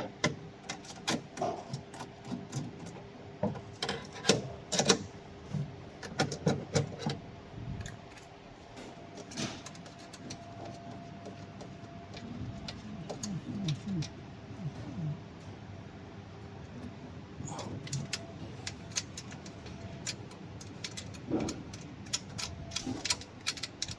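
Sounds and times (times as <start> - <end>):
clicks and taps of small parts: 17.8 - 23.9.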